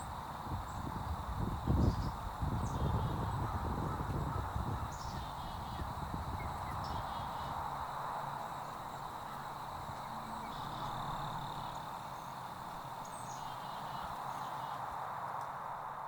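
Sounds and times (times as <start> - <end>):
outdoor ambient hiss: 0.0 - 16.0
high bird calls: 1.8 - 7.6, 9.2 - 14.8.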